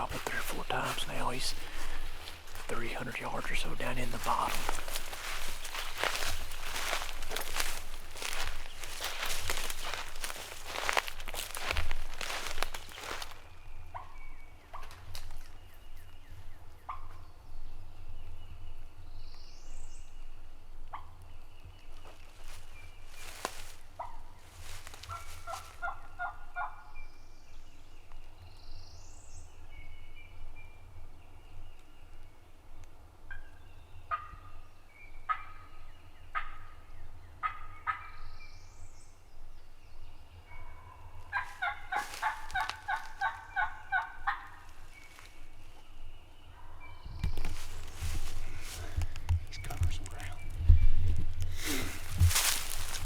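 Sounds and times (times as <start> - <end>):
turkey gobbling: 0.0 - 11.0, 25.1 - 26.8, 34.1 - 34.3, 35.3 - 35.6, 37.4 - 38.2, 41.3 - 44.6
faint songbird notes: 0.0 - 53.0.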